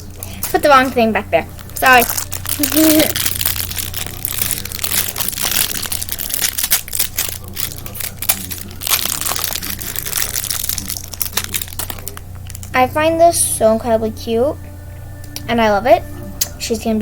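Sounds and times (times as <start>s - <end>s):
plastic packaging crinkling: 0.0s - 12.8s.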